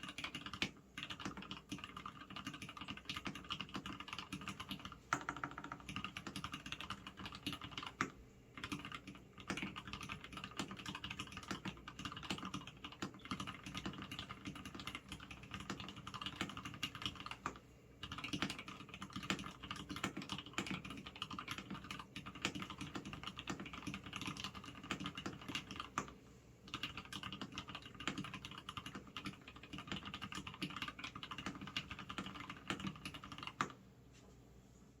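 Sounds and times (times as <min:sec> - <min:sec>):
fast typing on keyboard: 0:00.0 - 0:33.8.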